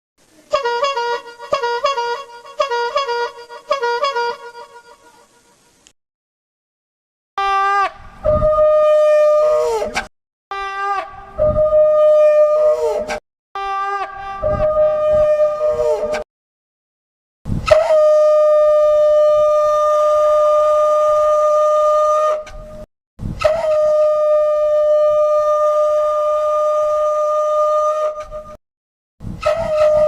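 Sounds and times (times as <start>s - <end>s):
air horn blasts: 0.5s - 4.9s.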